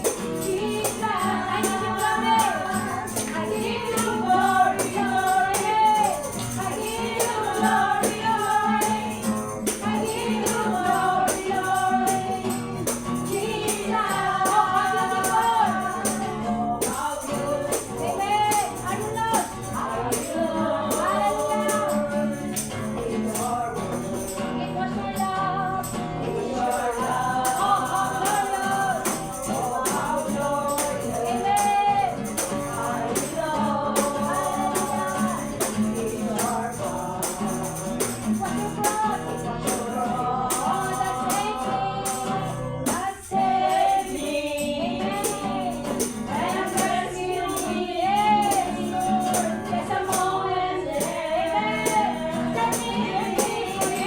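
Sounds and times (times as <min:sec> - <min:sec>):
congregation singing: 0:00.0 - 0:54.0
tambourine beat: 0:00.0 - 0:54.0.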